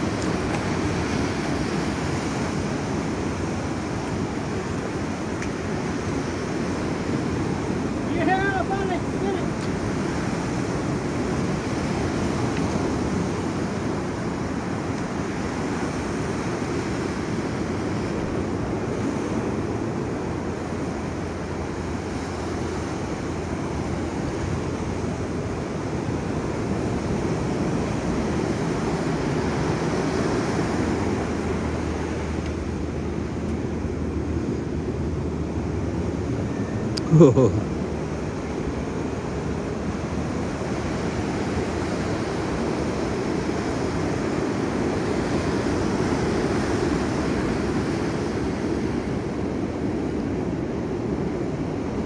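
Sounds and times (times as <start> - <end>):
ocean surf washing on beach: 0.0 - 52.0.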